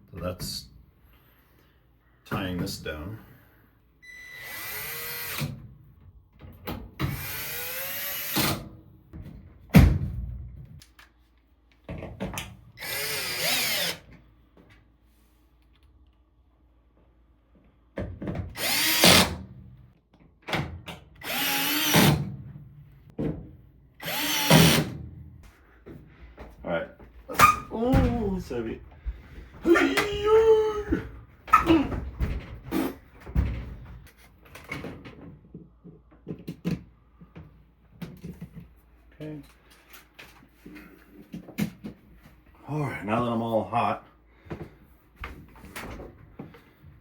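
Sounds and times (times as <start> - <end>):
power drill driving screws: 4.3 - 5.5, 7.0 - 8.6, 12.8 - 14.0, 18.5 - 19.4, 21.2 - 22.2, 24.0 - 24.9.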